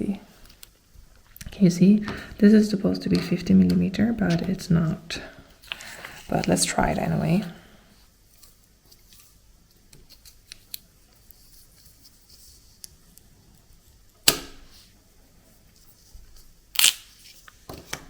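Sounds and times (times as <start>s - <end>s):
tape cutting tearing: 16.8s - 17.2s.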